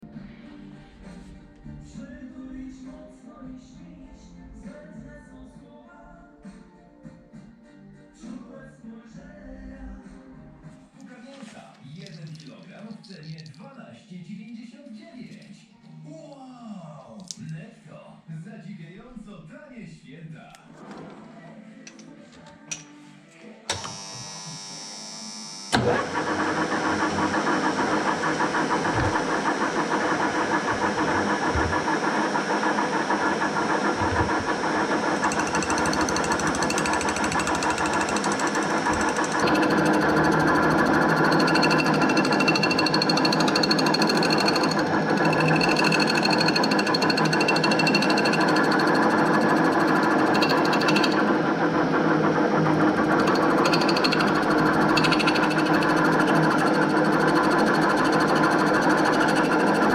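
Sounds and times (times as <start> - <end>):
metal lathe rattling: 25.8 - 59.9.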